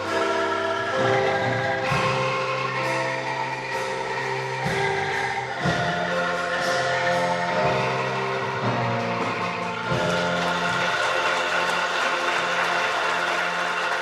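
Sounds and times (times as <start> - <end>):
angklung ensemble playing chords: 0.0 - 14.0.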